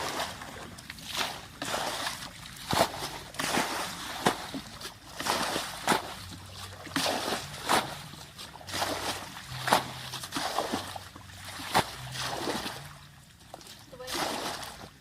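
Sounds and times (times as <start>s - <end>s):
water splashing and sloshing: 0.0s - 15.0s.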